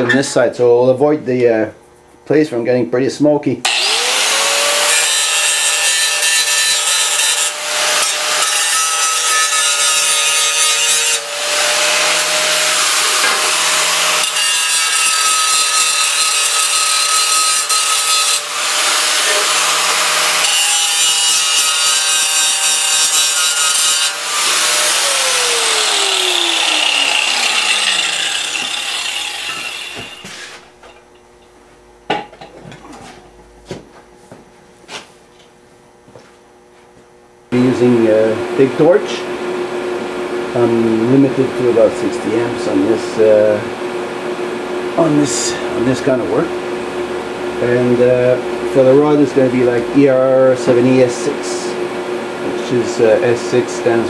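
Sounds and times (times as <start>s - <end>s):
electric grinder grinding metal: 3.6s - 31.2s.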